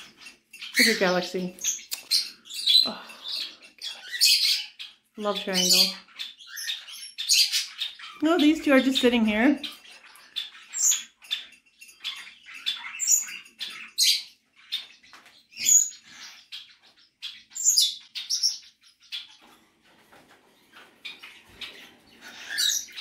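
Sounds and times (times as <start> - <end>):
parrots chirping and calling: 0.0 - 23.0.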